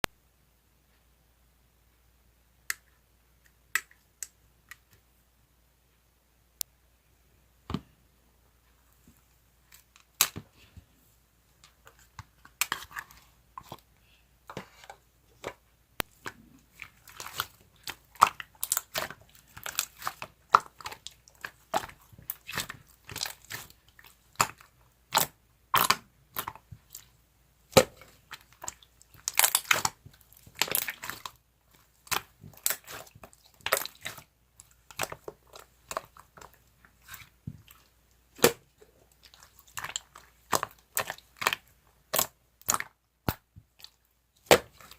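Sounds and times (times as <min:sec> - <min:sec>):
slime popping and crackling: 0:16.0 - 0:44.9.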